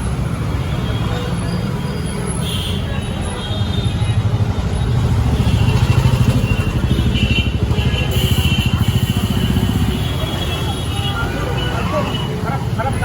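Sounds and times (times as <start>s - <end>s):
street traffic noise: 0.0s - 13.0s
motorcycle engine running: 5.1s - 11.2s.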